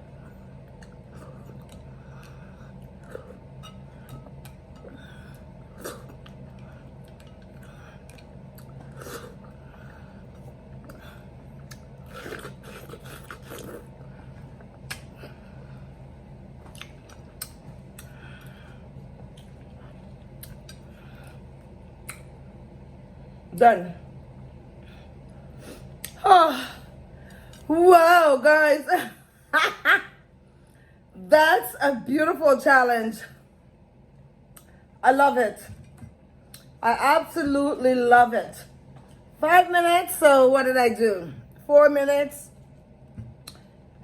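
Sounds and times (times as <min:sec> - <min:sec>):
faint low hum: 0:00.0 - 0:44.0
person chewing watermelon: 0:00.2 - 0:15.4, 0:16.6 - 0:22.3
wet mouth clicks and smacking: 0:20.4 - 0:20.8, 0:22.0 - 0:22.3, 0:43.4 - 0:43.7.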